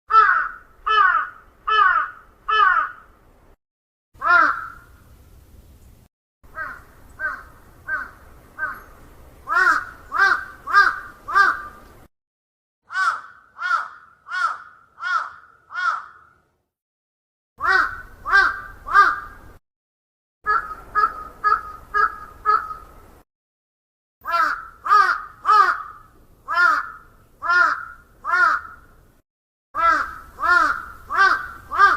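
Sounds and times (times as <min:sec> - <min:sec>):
crows cawing: 0:00.1 - 0:03.1, 0:04.2 - 0:04.9, 0:06.5 - 0:08.9, 0:09.5 - 0:11.8, 0:12.9 - 0:16.4, 0:17.6 - 0:19.4, 0:20.5 - 0:22.9, 0:24.2 - 0:28.9, 0:29.8 - 0:31.9.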